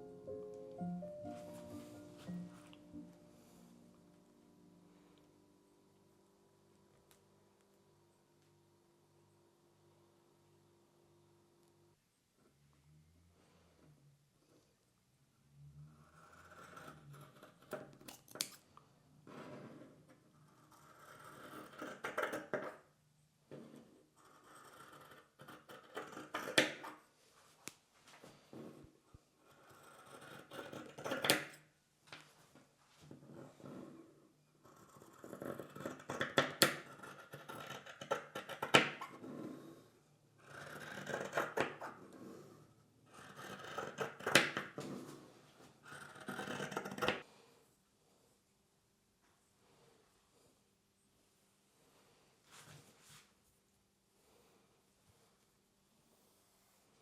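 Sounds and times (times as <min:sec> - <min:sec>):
rustling and scraping: 0:44.7 - 0:45.8, 0:51.4 - 0:53.8.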